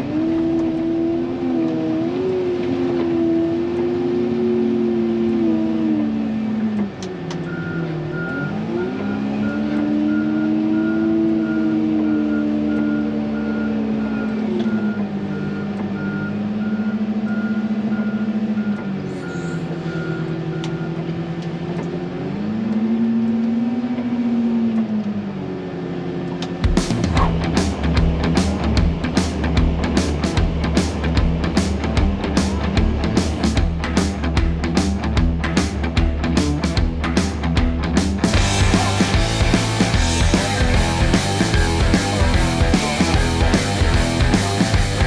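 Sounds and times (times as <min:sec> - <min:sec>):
reversing alarm beeping: 0:07.5 - 0:21.0
diesel engine revving: 0:26.9 - 0:45.0.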